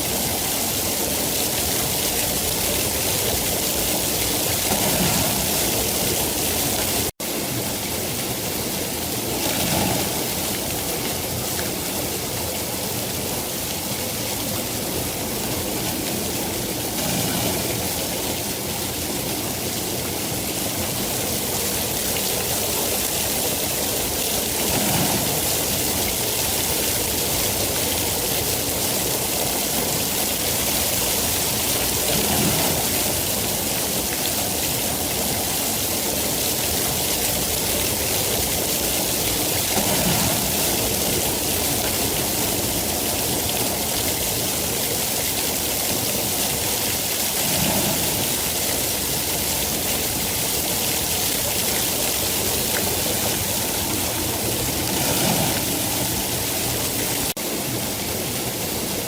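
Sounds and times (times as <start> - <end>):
heavy rainfall: 0.0 - 59.0.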